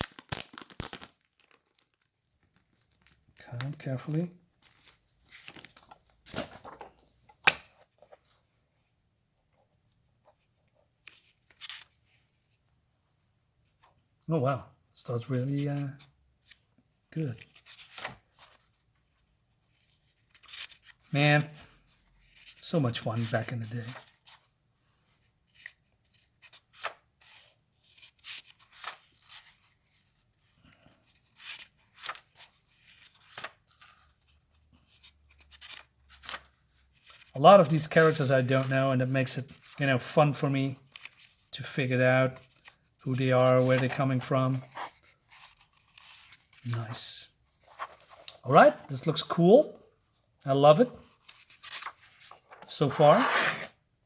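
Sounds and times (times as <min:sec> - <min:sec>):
pages turning: 0:00.0 - 0:08.4, 0:11.0 - 0:12.5, 0:17.2 - 0:30.2, 0:31.0 - 0:41.5, 0:42.3 - 0:53.8
plastic sleeve and paper rustling: 0:00.0 - 0:08.4, 0:31.1 - 0:53.8.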